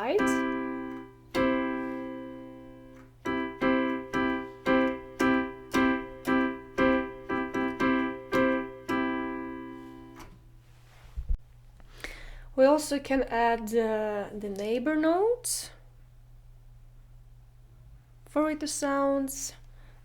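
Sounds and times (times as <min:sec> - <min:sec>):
piano chord struck: 0:00.0 - 0:10.4.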